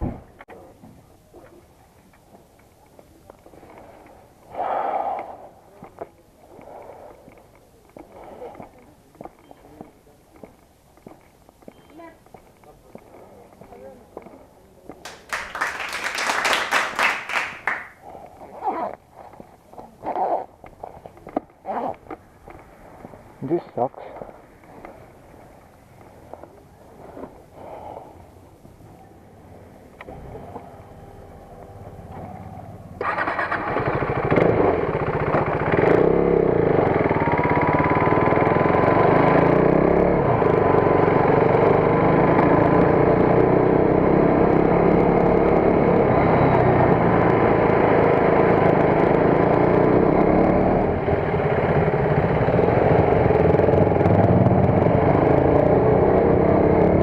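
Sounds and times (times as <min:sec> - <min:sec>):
motorcycle engine running: 0:30.1 - 0:57.0.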